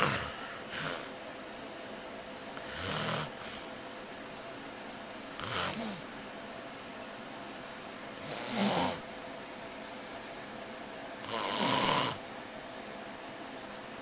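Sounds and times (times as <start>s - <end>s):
person snoring: 0.0s - 1.2s, 2.6s - 3.8s, 5.4s - 6.1s, 8.2s - 9.1s, 11.2s - 12.2s.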